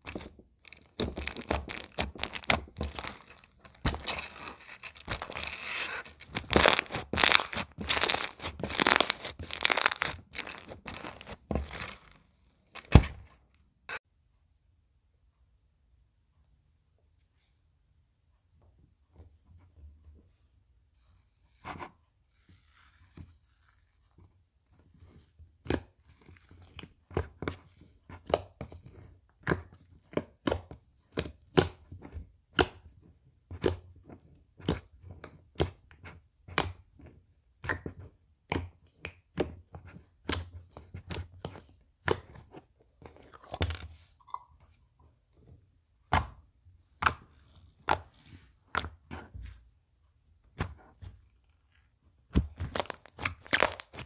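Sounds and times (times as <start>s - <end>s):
slime crunchy pops and crackles: 0.1s - 4.2s, 6.2s - 12.2s, 52.4s - 54.0s.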